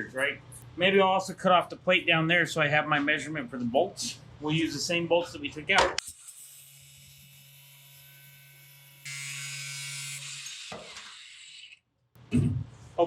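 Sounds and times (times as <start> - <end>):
angle grinder cutting steel: 6.0 - 11.8.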